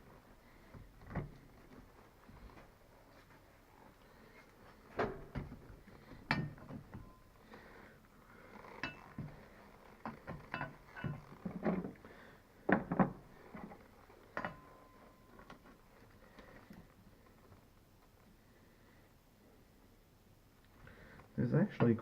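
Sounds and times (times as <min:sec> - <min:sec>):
metal clinks and knocks: 0:05.1 - 0:07.4, 0:08.6 - 0:12.0, 0:12.7 - 0:15.8.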